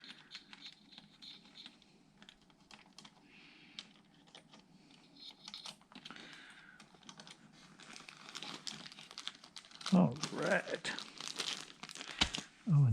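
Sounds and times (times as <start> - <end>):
small parts clicking: 0.0 - 7.4.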